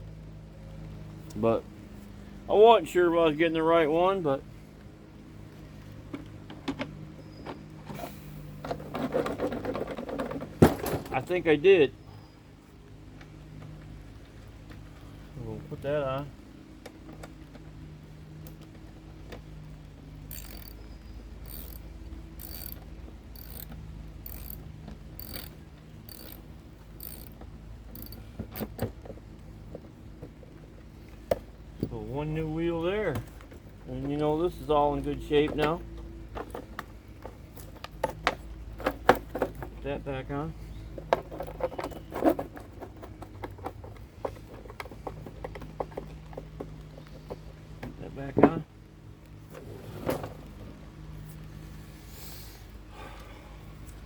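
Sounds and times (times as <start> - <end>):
ratchet clicking: 20.3 - 20.8, 21.4 - 21.8, 22.4 - 22.8, 23.4 - 24.6, 25.2 - 26.4, 27.0 - 27.3, 28.0 - 28.7
sharp clicks: 20.3 - 20.8, 21.5 - 21.8, 22.4 - 22.8, 23.4 - 24.6, 25.2 - 25.5, 26.1 - 26.4, 27.0 - 27.3, 28.0 - 28.7.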